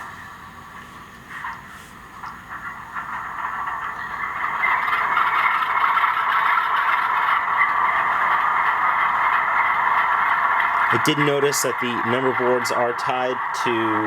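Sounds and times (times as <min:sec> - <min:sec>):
diesel engine through small speaker: 0:00.0 - 0:14.0
clicks and clatter: 0:01.1 - 0:11.1.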